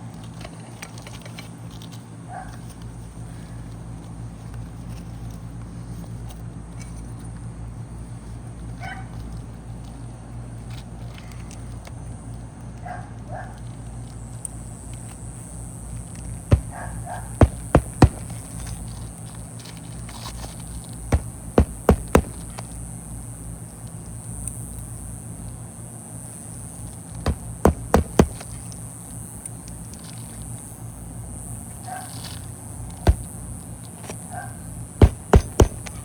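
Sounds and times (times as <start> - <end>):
steady low hum: 16.1 - 18.8, 20.6 - 23.1, 27.0 - 28.8, 33.0 - 36.0
nails hammered into shingles: 16.5 - 18.7, 21.1 - 22.8, 27.3 - 28.6, 33.1 - 33.4, 35.0 - 36.0.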